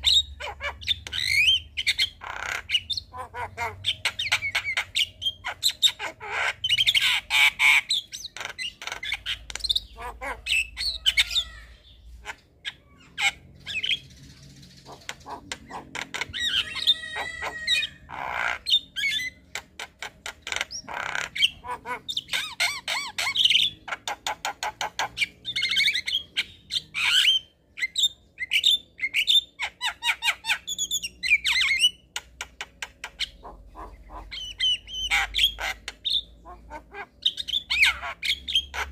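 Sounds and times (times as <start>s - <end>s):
birds squawking and chirping: 0.0s - 38.9s.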